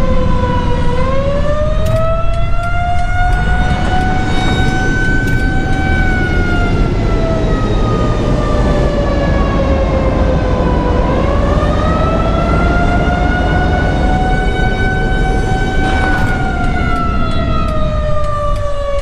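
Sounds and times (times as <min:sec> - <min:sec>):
civil defence siren wailing: 0:00.0 - 0:19.0.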